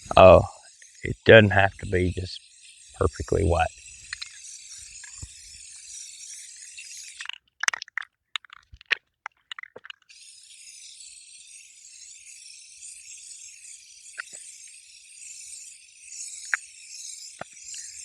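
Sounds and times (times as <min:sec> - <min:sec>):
spray paint can hissing: 0:02.9 - 0:08.6, 0:09.6 - 0:18.0
sharp clicks and rattles: 0:07.2 - 0:10.1.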